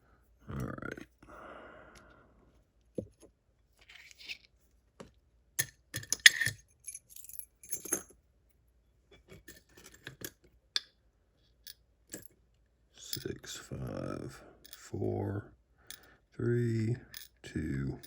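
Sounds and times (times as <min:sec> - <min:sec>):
small metal clicks and clinks: 0:05.6 - 0:08.2.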